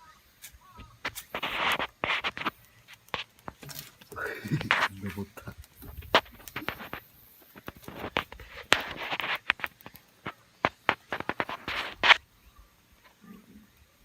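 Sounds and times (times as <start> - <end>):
scraping rustles: 0.4 - 12.2.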